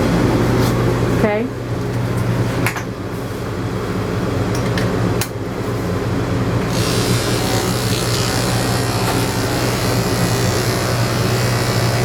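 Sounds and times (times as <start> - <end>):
electric clippers humming: 6.7 - 12.0.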